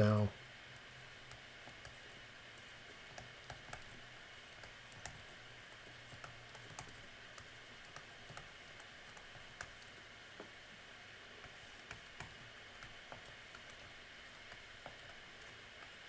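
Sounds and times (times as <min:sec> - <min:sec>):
low hum and hiss: 0:00.0 - 0:01.3.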